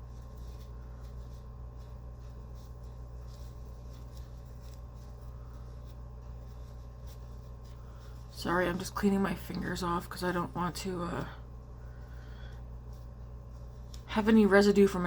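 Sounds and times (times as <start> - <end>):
fingers being wiped: 0.0 - 8.4
low electrical hum: 0.0 - 15.0.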